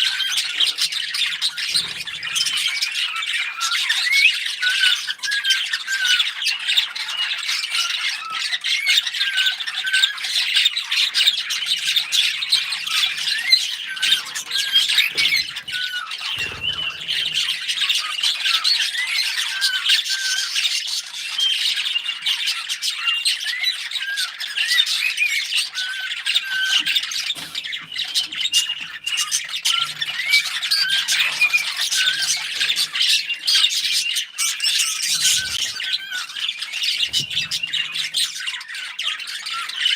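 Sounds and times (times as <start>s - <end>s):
parrots chirping and chattering: 0.0s - 39.9s.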